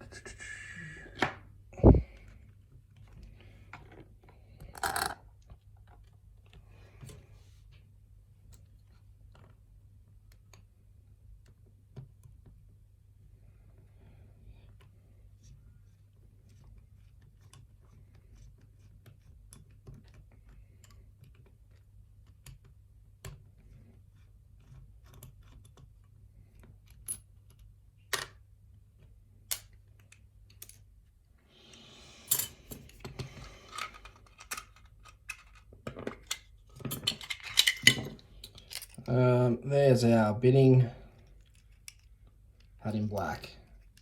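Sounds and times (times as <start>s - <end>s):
metal parts rattling: 4.7s - 5.2s, 32.3s - 39.1s
lock picks clicking in lock: 33.7s - 35.6s, 36.2s - 39.0s.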